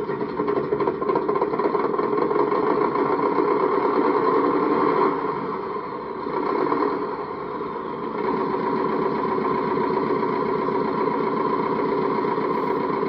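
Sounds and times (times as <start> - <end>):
electronic truck engine idling: 5.6 - 13.0.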